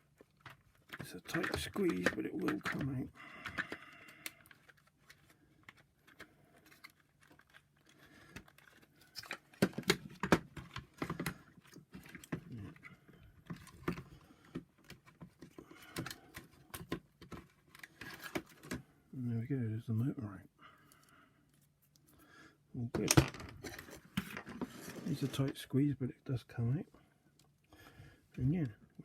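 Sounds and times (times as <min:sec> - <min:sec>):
plastic clicks and rattles: 0:00.0 - 0:12.5.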